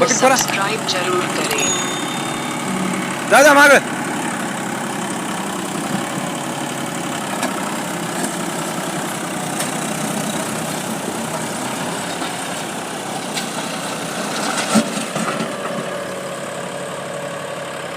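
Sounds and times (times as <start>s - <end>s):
diesel engine idling: 0.0s - 17.9s.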